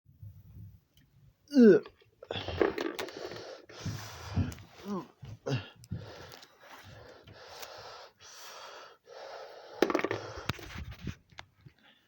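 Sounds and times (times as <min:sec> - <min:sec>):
person breathing loudly gasping: 0:01.6 - 0:10.6.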